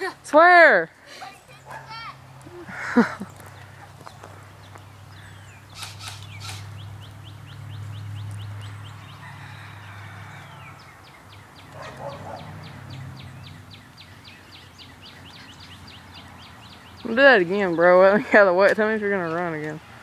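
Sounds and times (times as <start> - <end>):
bird chirping: 1.2 - 9.6, 10.4 - 19.6
sharp clicks: 5.7 - 6.7.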